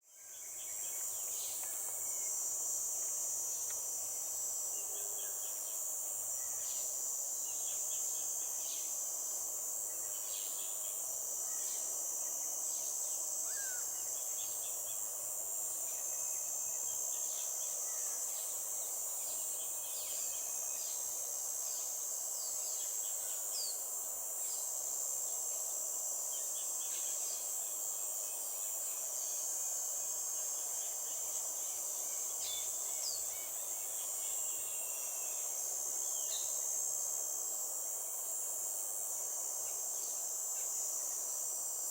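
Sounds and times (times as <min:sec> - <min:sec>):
high-pitched insect drone: 0:00.1 - 0:41.9.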